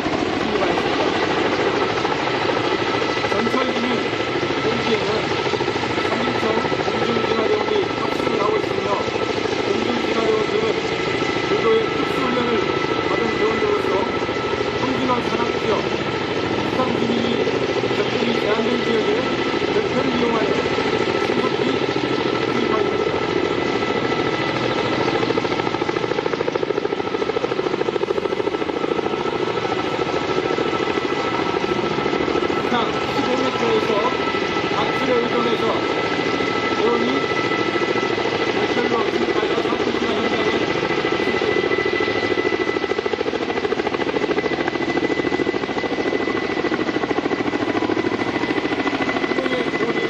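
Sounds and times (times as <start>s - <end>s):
helicopter rotor thumping: 0.0s - 50.0s
high turbine whine: 0.0s - 50.0s.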